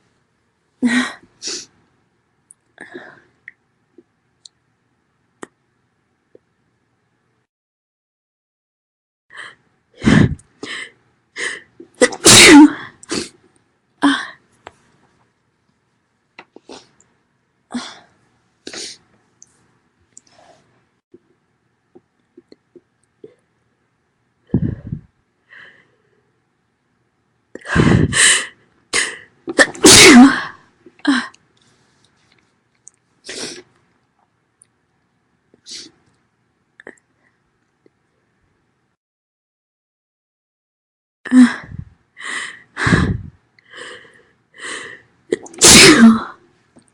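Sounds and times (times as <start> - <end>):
woman sneezing: 12.0 - 13.3, 29.5 - 30.5, 45.4 - 46.4.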